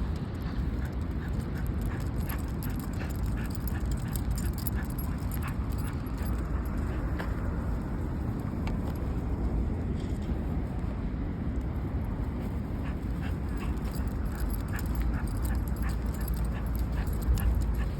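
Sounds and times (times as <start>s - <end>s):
dog tags clicking and jingling: 0.8s - 7.2s, 12.8s - 17.9s.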